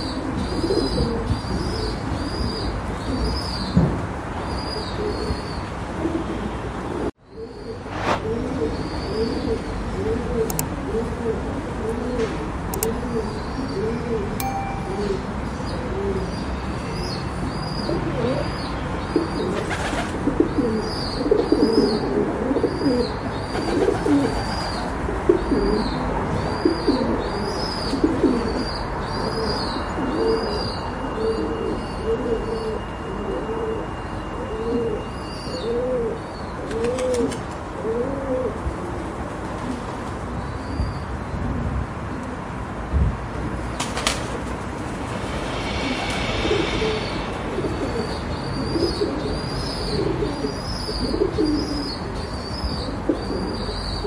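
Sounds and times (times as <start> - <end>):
pigeons cooing: 0.0 - 2.0, 4.8 - 14.3, 19.2 - 26.0, 48.6 - 52.0.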